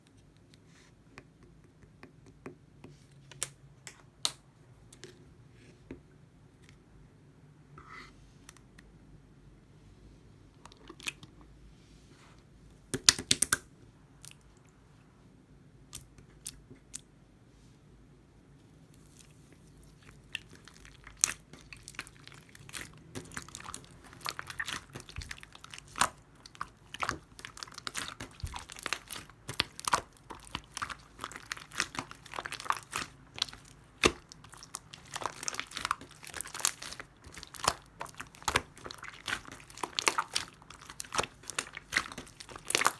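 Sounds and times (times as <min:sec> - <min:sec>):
slime crackling and popping: 0:19.0 - 0:42.9.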